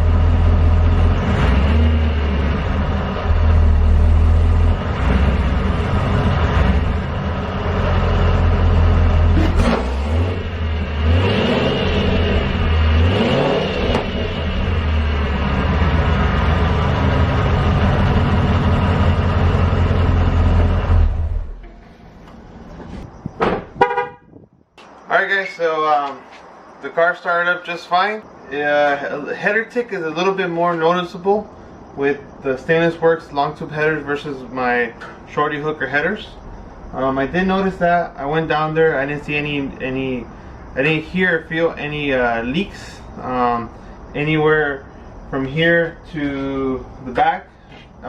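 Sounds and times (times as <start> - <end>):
car engine idling and revving: 0.0 - 24.1.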